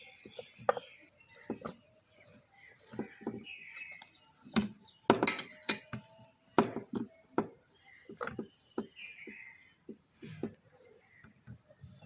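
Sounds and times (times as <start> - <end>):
kitchen utensils knocking and clinking: 4.4 - 8.9.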